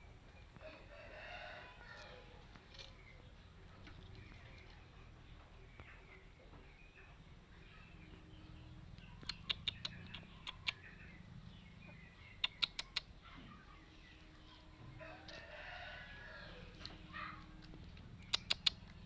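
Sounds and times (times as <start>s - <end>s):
rooster crowing: 0.6s - 2.4s, 15.0s - 16.8s.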